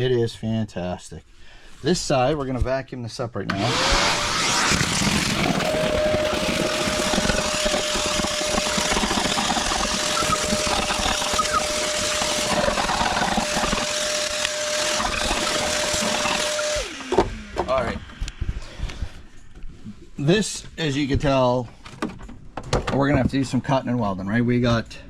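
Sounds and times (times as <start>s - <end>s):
vacuum cleaner running: 3.5s - 19.2s.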